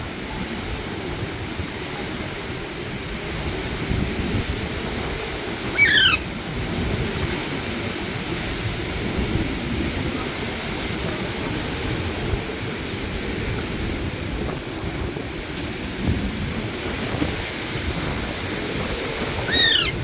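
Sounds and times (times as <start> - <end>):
parakeet screech: 5.7 - 6.2, 19.4 - 20.0.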